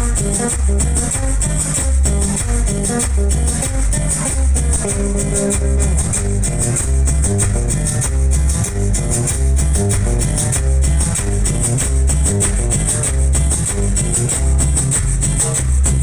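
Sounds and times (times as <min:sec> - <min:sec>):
guitar lines: 0:00.0 - 0:16.0
heavy bass beat: 0:00.0 - 0:16.0.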